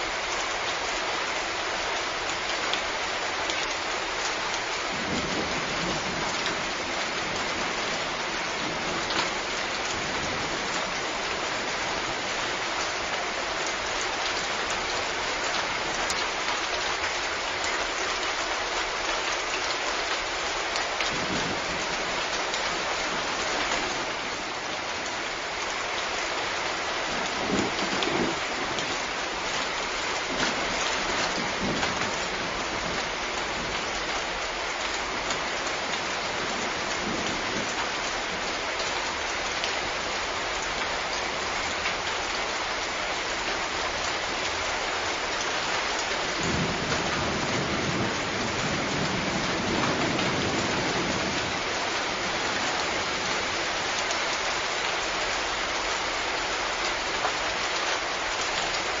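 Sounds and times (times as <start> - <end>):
heavy rain hissing: 20.2 - 59.0.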